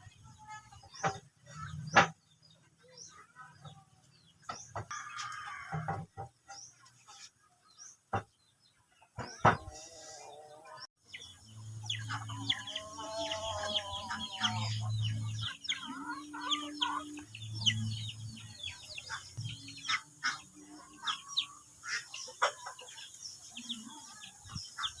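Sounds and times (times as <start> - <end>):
chickens clucking: 0.0 - 25.0.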